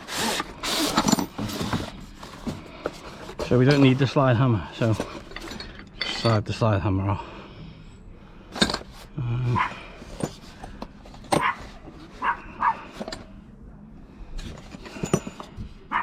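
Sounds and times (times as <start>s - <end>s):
dog barking: 9.6s - 9.8s, 11.4s - 11.6s, 12.2s - 12.8s.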